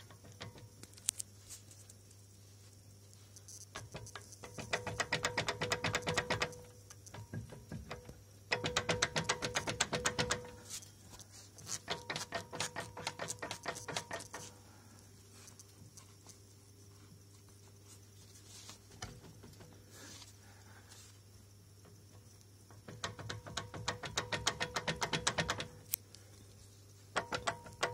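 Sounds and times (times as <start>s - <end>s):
driveshaft clicking: 22.7s - 25.8s.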